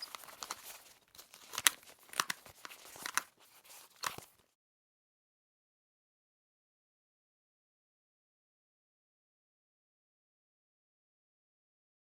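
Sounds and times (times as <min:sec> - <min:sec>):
headphones clicking: 0:00.0 - 0:04.4
headphones rustling: 0:00.0 - 0:04.5.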